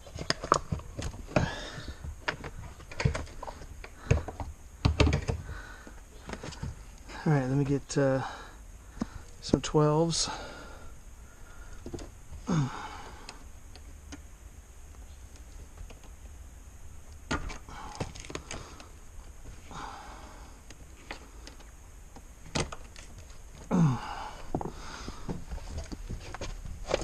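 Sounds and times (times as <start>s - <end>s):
man grunting with effort: 12.4s - 13.1s, 23.7s - 24.4s.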